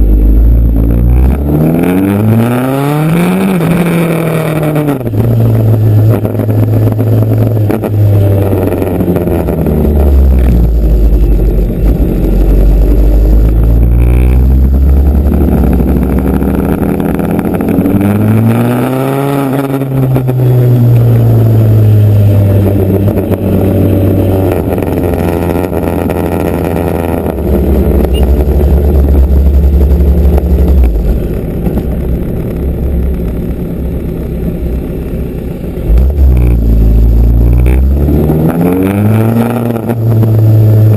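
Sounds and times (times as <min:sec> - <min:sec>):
motorcycle engine running: 0:04.5 - 0:18.4, 0:19.8 - 0:38.4.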